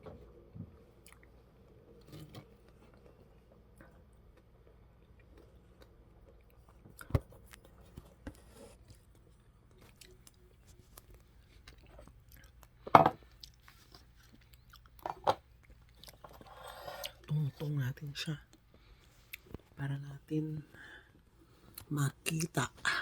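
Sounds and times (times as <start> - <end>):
kiwi fruit chewing: 3.8 - 17.4.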